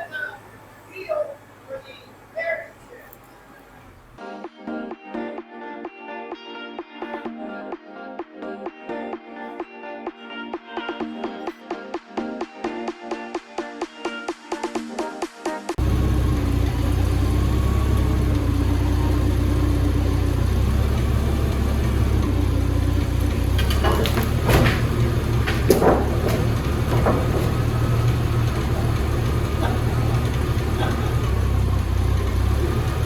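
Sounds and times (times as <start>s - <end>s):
forklift engine running: 0.0s - 4.2s, 15.8s - 33.0s
short knocks and clanks: 15.8s - 33.0s.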